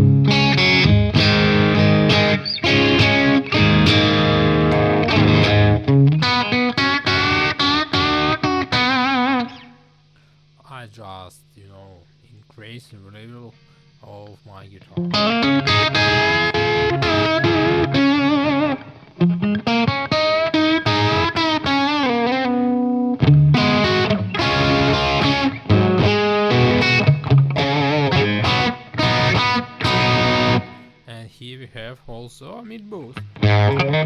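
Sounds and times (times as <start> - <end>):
overdriven electric guitar lead: 0.0 - 9.8, 14.9 - 30.9, 33.2 - 34.0.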